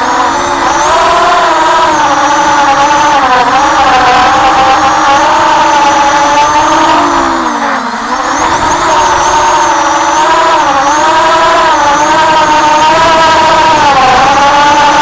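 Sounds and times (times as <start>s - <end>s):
quadcopter motors whining: 0.0s - 15.0s.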